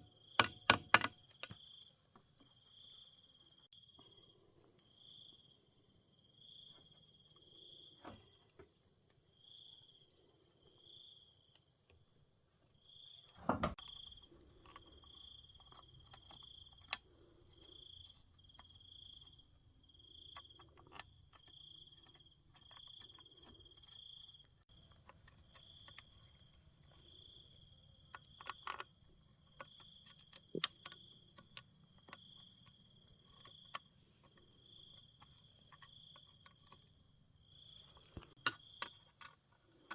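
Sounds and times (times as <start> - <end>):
crickets chirping: 0.0 - 39.9
sharp clicks and knocks: 0.4 - 1.6.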